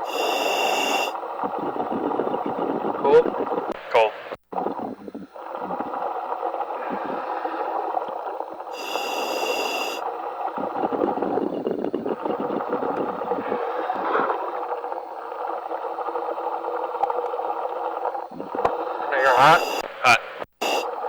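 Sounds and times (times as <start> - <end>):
diver breathing: 0.0 - 3.8, 4.6 - 15.8, 17.8 - 21.0
bubbles gurgling: 0.2 - 3.8, 4.5 - 8.8, 10.0 - 19.8.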